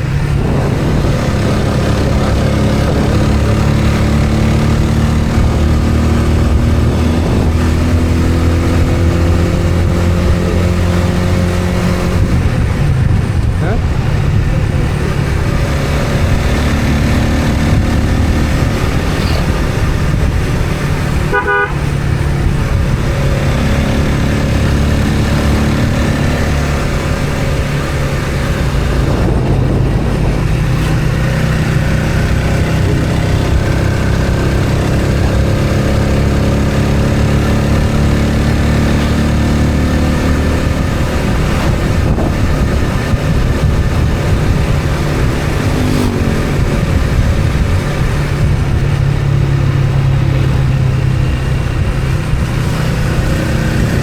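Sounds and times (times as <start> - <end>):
vehicle engine and road noise: 0.0 - 54.0
short horn toot: 21.3 - 21.9.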